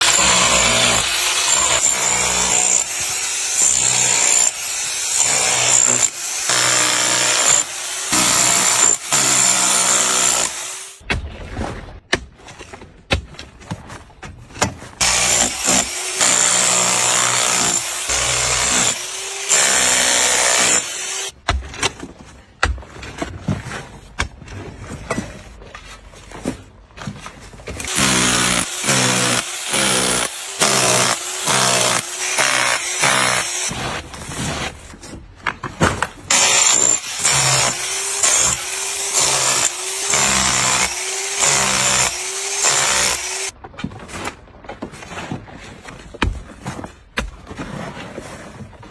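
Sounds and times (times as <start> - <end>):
power tool grinding metal: 0.0 - 11.0, 15.0 - 21.4, 27.8 - 33.8, 36.3 - 43.5.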